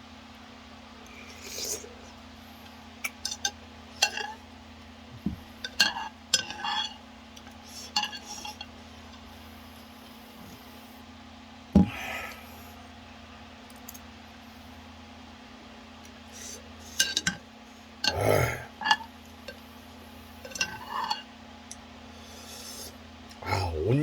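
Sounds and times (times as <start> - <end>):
utensils clinking against bowl: 5.6 - 7.0, 20.4 - 21.3.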